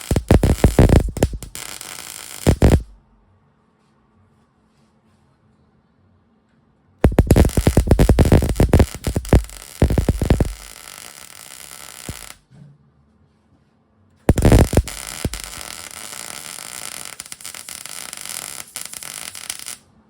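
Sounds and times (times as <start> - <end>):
arc welding crackling and popping: 0.0 - 3.0, 7.0 - 12.4, 14.3 - 19.8.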